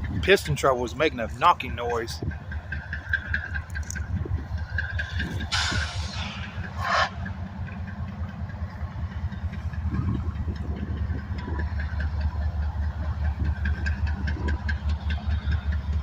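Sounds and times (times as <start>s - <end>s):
diesel locomotive engine rumbling: 0.0s - 16.0s
engine knock: 0.0s - 16.0s.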